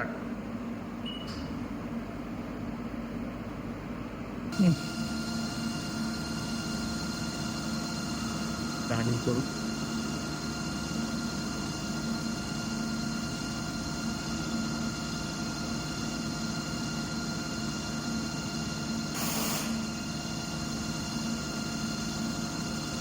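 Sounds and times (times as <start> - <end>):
lathe humming and whining: 4.2 - 23.0.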